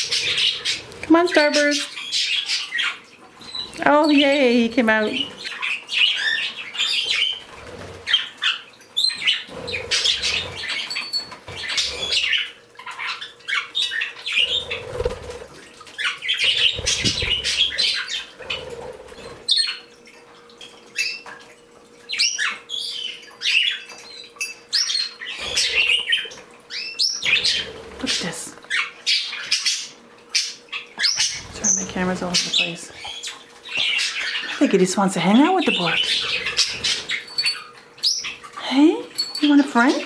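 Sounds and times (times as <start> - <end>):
birds chirping and calling: 0.0 - 40.0
wing flapping: 14.4 - 19.5.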